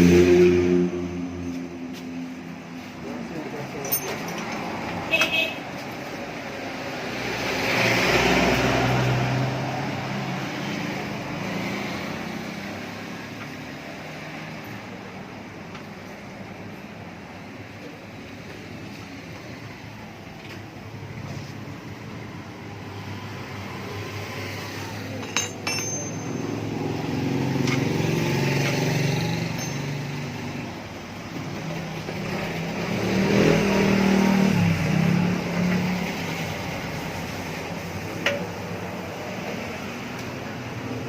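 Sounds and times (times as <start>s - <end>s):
hand tools clinking on metal exhaust: 3.6s - 5.4s, 25.0s - 30.6s.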